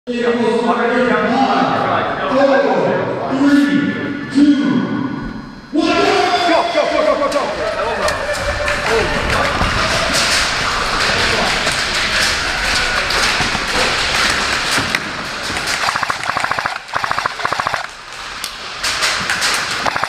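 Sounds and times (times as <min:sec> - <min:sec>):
loud steady rushing noise: 0:07.4 - 0:20.0
airsoft guns firing bursts: 0:15.6 - 0:18.0, 0:19.8 - 0:20.0.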